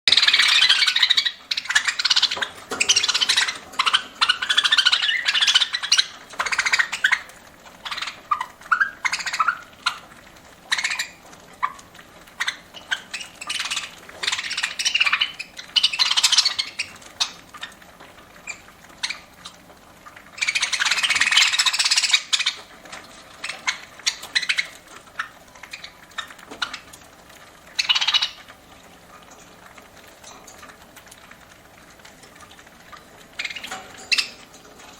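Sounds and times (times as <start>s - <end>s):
budgerigars chirping: 0.1s - 10.1s, 10.7s - 17.8s, 18.4s - 19.3s, 20.4s - 22.7s, 23.3s - 26.9s, 27.7s - 28.5s, 33.4s - 34.5s.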